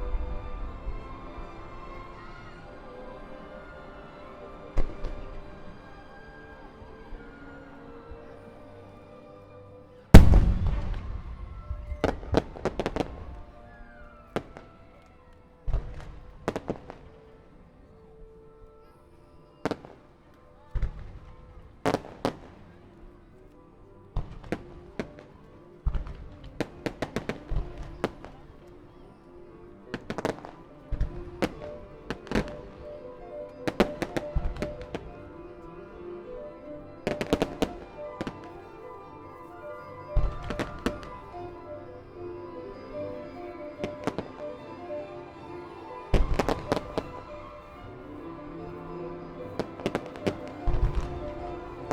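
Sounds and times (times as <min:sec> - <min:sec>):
faint music: 0:00.0 - 0:51.9
firework booms: 0:10.2 - 0:13.3
firework cracks: 0:10.2 - 0:13.4.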